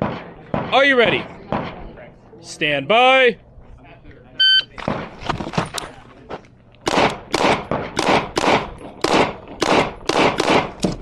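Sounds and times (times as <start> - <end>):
pistol shots with echo: 0.0 - 1.8, 6.8 - 11.0.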